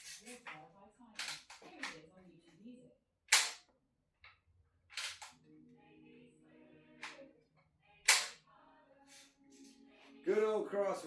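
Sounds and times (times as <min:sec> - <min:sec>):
air rifle firing pops: 0:03.3 - 0:03.6, 0:08.1 - 0:08.4.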